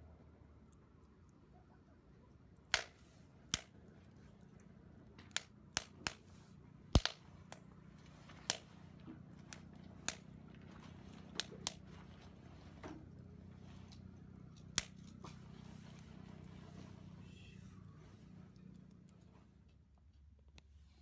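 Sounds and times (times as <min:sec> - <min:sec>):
faint low hum: 0:00.0 - 0:21.0
sharp clicks and pops: 0:05.2 - 0:06.2, 0:07.0 - 0:07.7.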